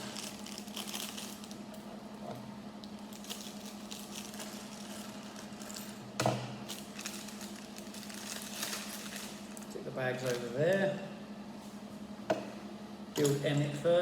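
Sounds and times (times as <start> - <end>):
plastic bag rustling: 0.0 - 1.7, 3.0 - 5.9, 6.6 - 10.5
steady low hum: 0.0 - 14.0.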